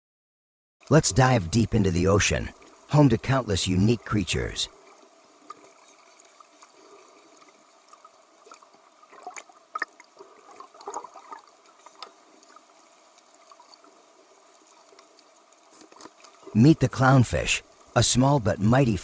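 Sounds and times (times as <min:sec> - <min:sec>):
underwater water ambience: 0:00.8 - 0:19.0
bubbling pops: 0:09.1 - 0:11.5.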